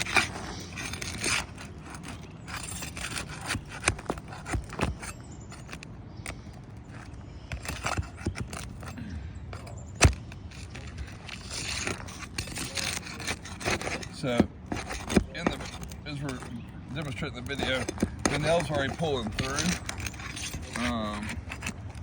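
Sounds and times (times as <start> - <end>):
roof shingles scraping: 0.0 - 22.0.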